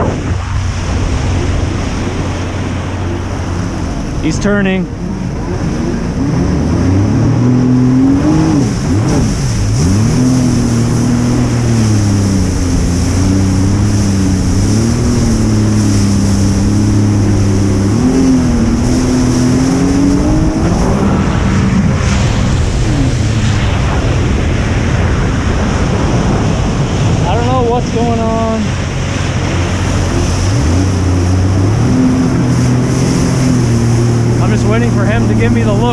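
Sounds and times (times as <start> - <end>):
jet ski engine running: 0.0 - 35.9
water wash: 0.0 - 35.9
wind: 0.0 - 35.9.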